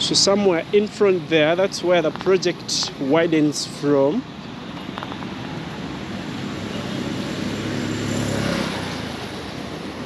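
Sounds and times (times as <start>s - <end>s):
vehicle passing: 4.8s - 10.0s.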